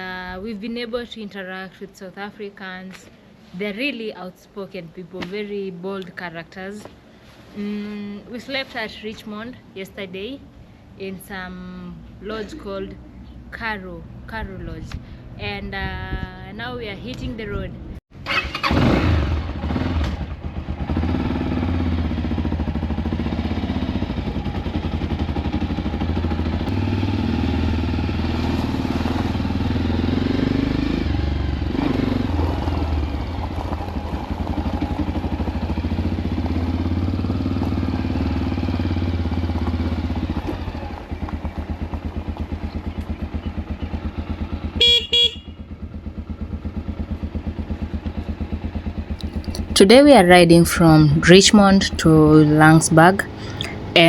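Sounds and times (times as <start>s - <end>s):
motorcycle engine running: 19.3s - 49.8s
horn toot: 44.8s - 45.5s.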